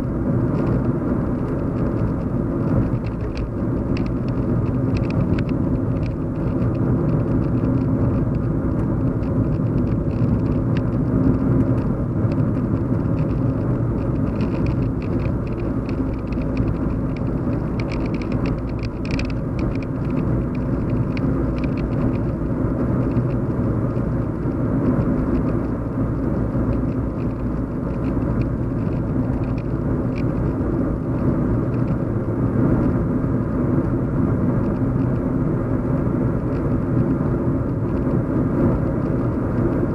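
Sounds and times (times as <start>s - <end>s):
car engine and tyre rumble: 0.0s - 39.9s
light ticks and rattles: 0.3s - 32.0s.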